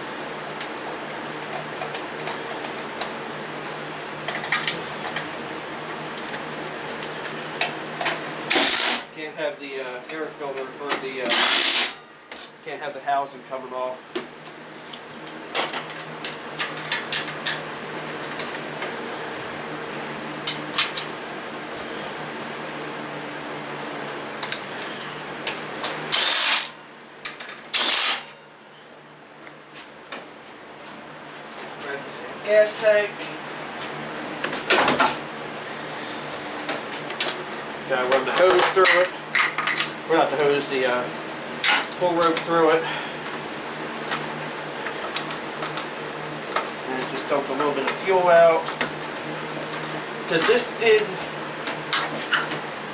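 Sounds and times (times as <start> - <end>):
workshop hum: 0.0 - 52.9
socket tool bursts: 26.1 - 26.7.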